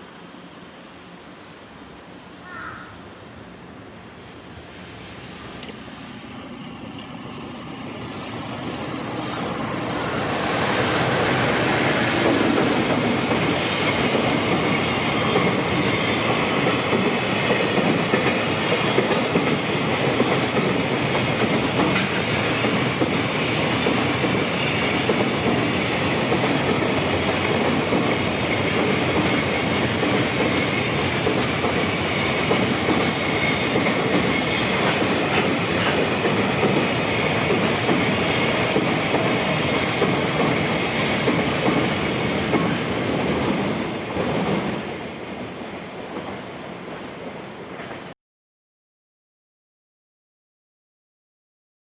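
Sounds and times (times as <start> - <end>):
train wheels rumbling on rail: 2.2 - 48.1
wheels clacking over rail joints: 11.8 - 44.8.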